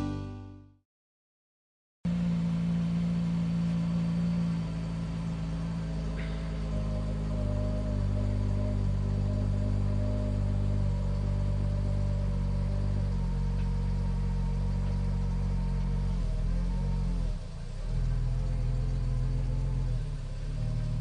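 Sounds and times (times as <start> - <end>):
car engine running: 2.1 - 21.0.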